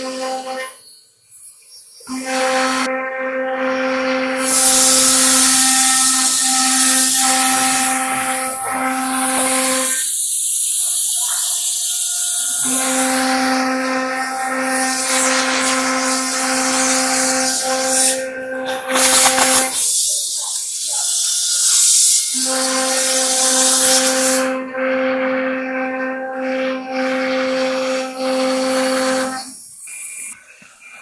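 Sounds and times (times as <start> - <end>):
router spindle tone: 0.0 - 0.8, 2.1 - 29.6
hissing cutting noise: 4.3 - 24.5.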